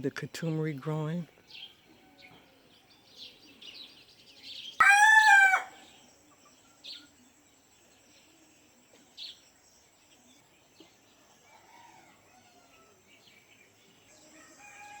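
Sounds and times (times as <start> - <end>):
high bird chirp: 3.0 - 7.2
distant fowl calls: 4.8 - 5.8.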